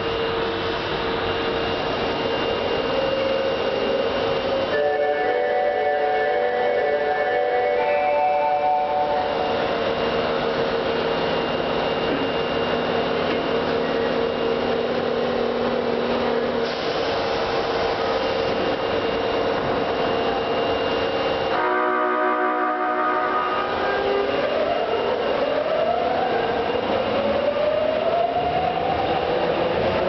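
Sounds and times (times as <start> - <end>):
steady whine: 0.0 - 30.0
train running rumble: 0.0 - 30.0.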